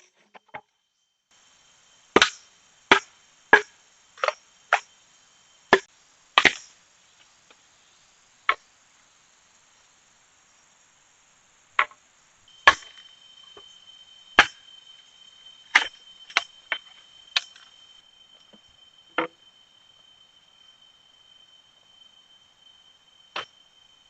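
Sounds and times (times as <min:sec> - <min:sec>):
blade chopping wood: 0:02.2 - 0:04.8, 0:06.4 - 0:06.6, 0:12.7 - 0:13.0, 0:14.4 - 0:14.6, 0:15.7 - 0:17.7.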